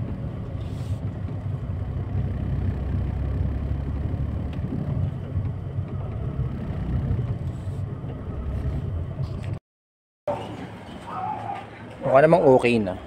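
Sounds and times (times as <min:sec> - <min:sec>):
car engine and road noise: 0:00.0 - 0:09.6, 0:10.3 - 0:13.0.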